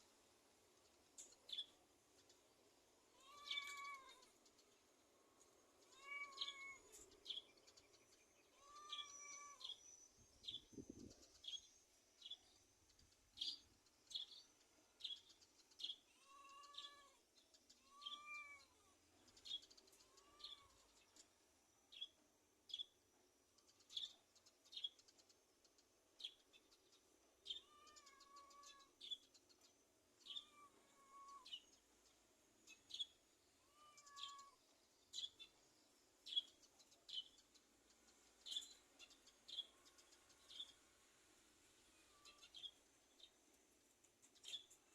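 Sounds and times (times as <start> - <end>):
bird chirping: 0.8 - 23.0, 23.6 - 41.2, 41.8 - 44.9
cat meowing: 3.1 - 4.3, 5.9 - 6.9, 8.5 - 9.7, 16.2 - 17.2, 17.8 - 18.9, 20.0 - 20.8, 27.5 - 28.9, 30.2 - 31.6, 33.6 - 34.6.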